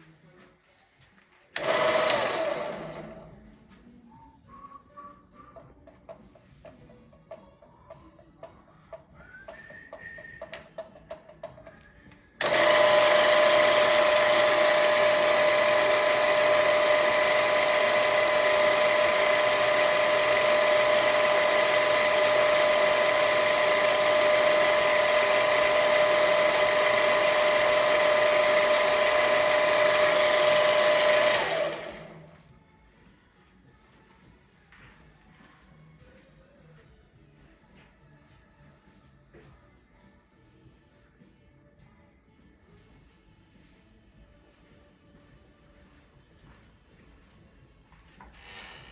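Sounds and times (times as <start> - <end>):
milling machine motor whine: 1.6 - 3.2, 12.4 - 32.4.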